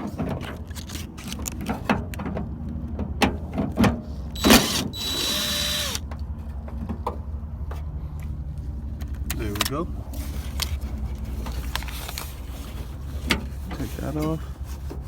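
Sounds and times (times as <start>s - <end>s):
steady whir: 4.4s - 6.0s.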